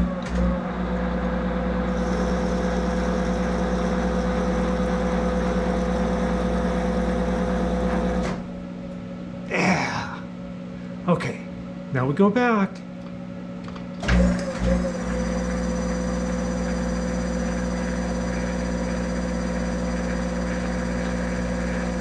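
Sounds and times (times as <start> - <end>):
lathe humming: 1.6 - 8.2, 14.4 - 22.0.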